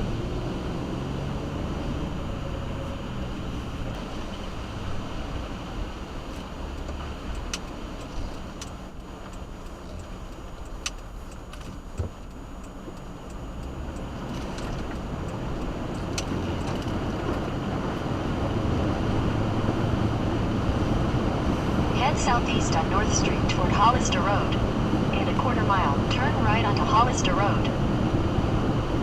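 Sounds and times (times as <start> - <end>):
engine and road noise rumble: 0.0 - 29.0
sharp ticks: 6.7 - 17.4.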